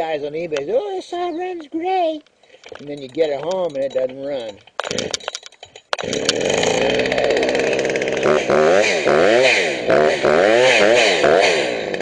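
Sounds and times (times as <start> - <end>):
chainsaw revving: 4.8 - 5.3, 6.0 - 12.0.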